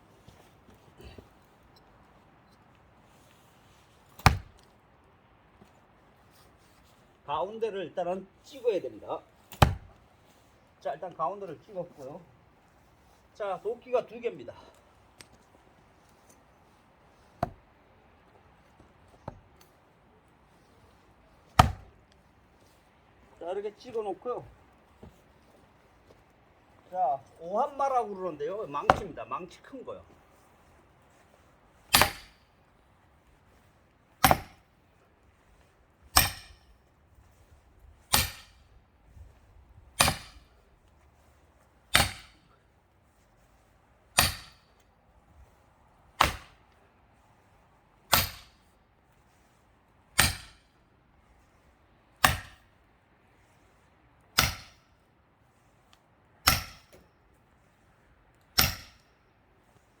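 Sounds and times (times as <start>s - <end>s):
sledgehammer striking axe heads: 4.2s - 4.5s, 9.5s - 9.9s, 21.6s - 21.9s, 28.9s - 29.2s, 31.9s - 32.4s, 34.2s - 34.6s, 36.2s - 36.6s, 38.1s - 38.6s, 40.0s - 40.5s, 41.9s - 42.4s, 44.2s - 44.6s, 46.2s - 46.6s, 48.1s - 48.5s, 50.2s - 50.6s, 52.2s - 52.6s, 54.4s - 54.8s, 56.4s - 57.0s, 58.6s - 59.0s.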